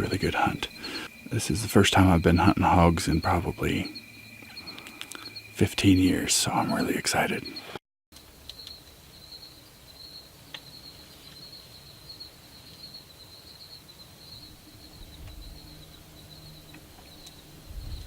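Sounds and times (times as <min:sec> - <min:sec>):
insect chorus trilling: 0:00.0 - 0:07.8, 0:08.5 - 0:18.0
faint low hum: 0:14.2 - 0:18.0.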